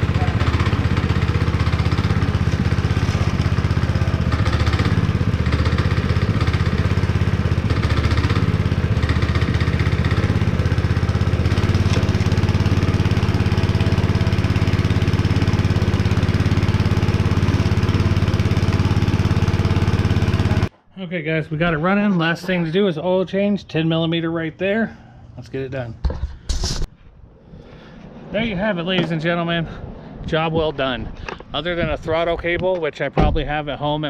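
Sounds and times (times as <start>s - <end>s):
power trowel engine running: 0.0s - 20.7s.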